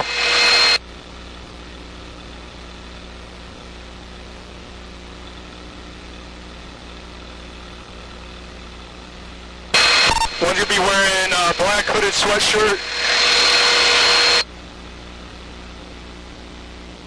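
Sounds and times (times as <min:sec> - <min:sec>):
helicopter engine and rotors droning: 0:00.0 - 0:00.8, 0:09.8 - 0:14.8.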